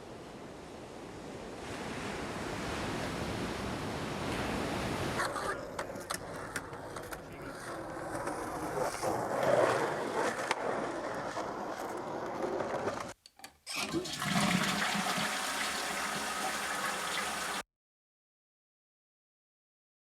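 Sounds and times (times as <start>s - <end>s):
rushing water: 13.8s - 17.6s.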